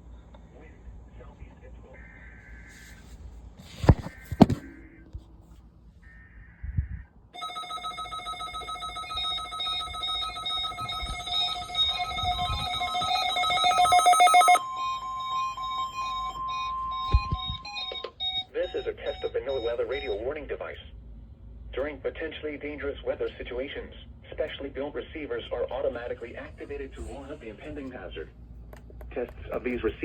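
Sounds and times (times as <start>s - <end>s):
steady alert tone: 7.4s - 18.0s
short electronic beep: 7.4s - 18.8s
rapidly pulsing electronic alarm: 7.4s - 20.2s.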